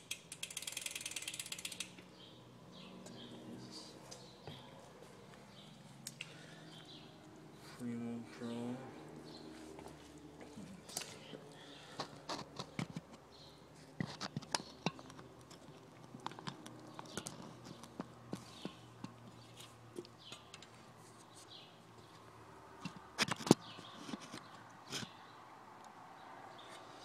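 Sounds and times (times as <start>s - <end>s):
handling clicks and knocks: 12.0s - 13.3s, 13.9s - 20.7s.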